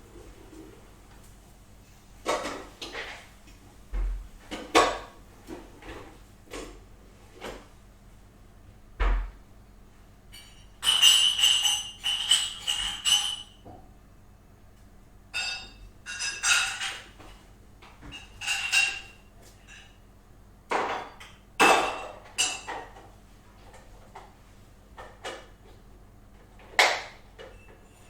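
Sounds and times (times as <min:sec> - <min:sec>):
dishes and utensils clattering: 0:02.2 - 0:03.2, 0:10.3 - 0:13.7, 0:15.4 - 0:20.0, 0:20.7 - 0:23.1, 0:26.6 - 0:28.0.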